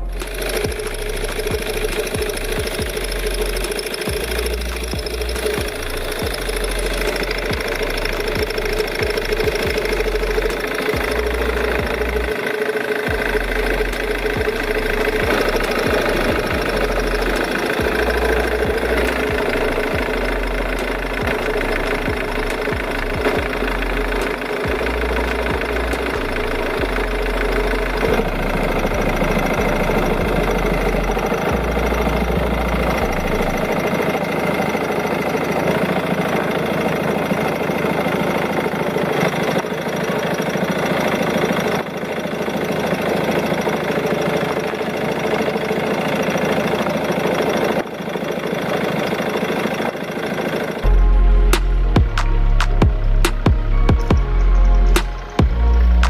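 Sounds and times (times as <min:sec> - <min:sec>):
car engine idling: 0:00.0 - 0:56.0
background music: 0:13.1 - 0:34.2, 0:50.8 - 0:56.0.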